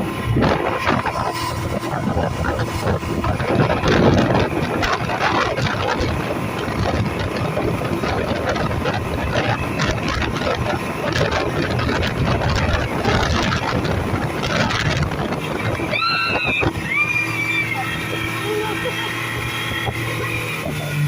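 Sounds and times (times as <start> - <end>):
speedboat running: 0.0 - 21.0
wind and water rushing: 0.0 - 21.0.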